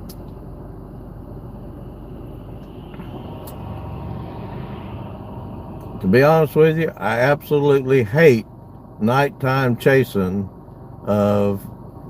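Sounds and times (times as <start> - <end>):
low vehicle rumble: 0.0 - 12.0.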